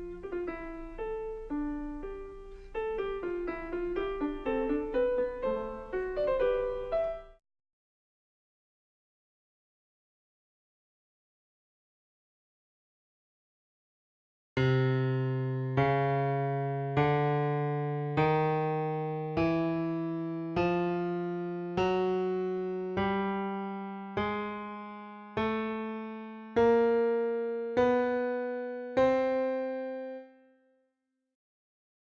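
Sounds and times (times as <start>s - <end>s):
keyboard playing ascending scale: 0.0s - 7.4s.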